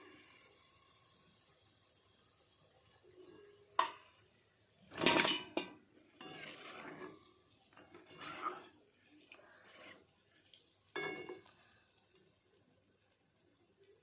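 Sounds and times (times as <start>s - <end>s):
cookware clattering: 3.8s - 4.2s, 4.9s - 7.2s, 10.9s - 11.5s
metal utensils clinking: 4.9s - 8.6s, 10.9s - 11.5s
metal scraping: 6.2s - 7.2s, 7.8s - 8.7s.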